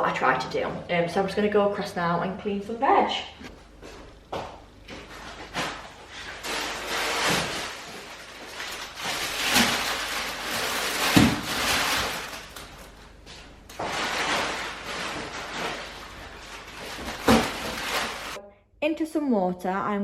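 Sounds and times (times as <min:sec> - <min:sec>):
rustling noise: 0:04.9 - 0:18.4.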